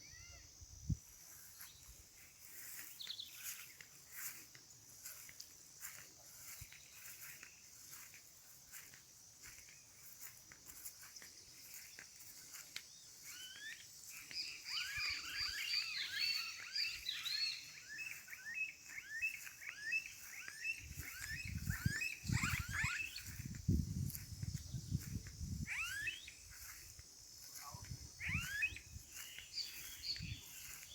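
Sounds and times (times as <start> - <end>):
high insect buzz: 0.0 - 30.9
birds chirping: 1.4 - 30.9.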